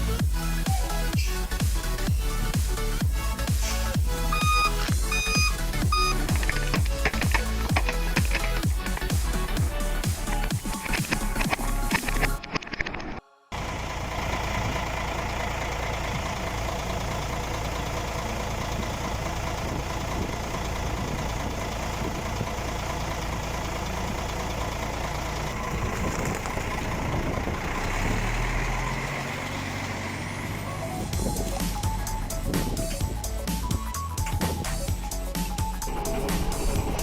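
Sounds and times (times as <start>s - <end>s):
electronic dance music: 0.0s - 12.4s, 31.1s - 37.0s
truck engine low rumble: 0.0s - 12.4s, 13.5s - 37.0s.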